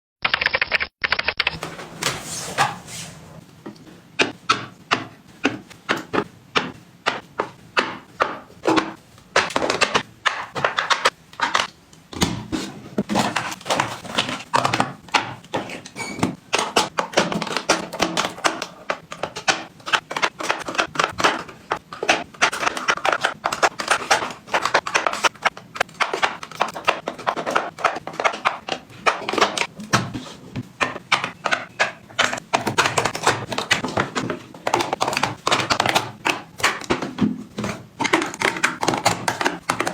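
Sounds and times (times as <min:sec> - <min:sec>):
small items clicking and knocking: 0:13.0 - 0:39.9.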